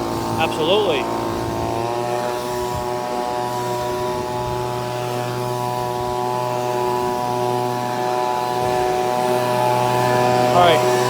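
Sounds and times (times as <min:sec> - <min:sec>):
leaf blowers running: 0:00.0 - 0:11.0.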